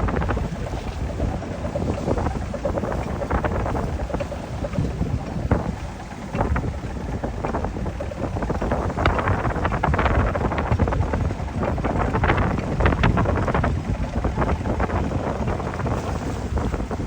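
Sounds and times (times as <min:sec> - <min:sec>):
water splashing against boat: 0:00.0 - 0:17.0
wind buffeting microphone: 0:00.0 - 0:17.0.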